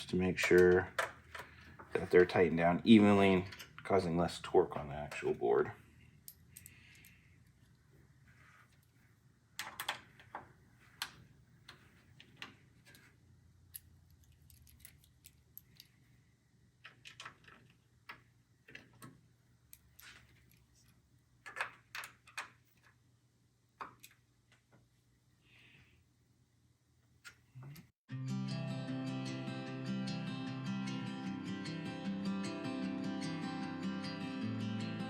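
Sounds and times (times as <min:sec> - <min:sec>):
screwdriver clicks and metallic taps: 0:00.4 - 0:01.6.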